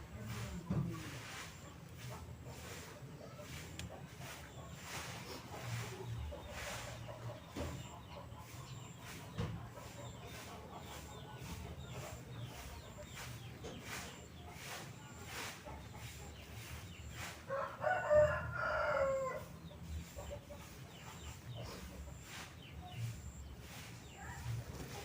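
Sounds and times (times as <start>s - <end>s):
rooster crowing: 17.5s - 19.5s.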